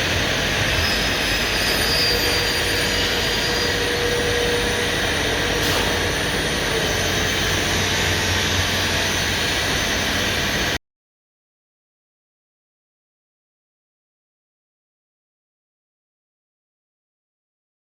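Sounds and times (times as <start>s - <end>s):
cnc router running: 0.0s - 10.8s.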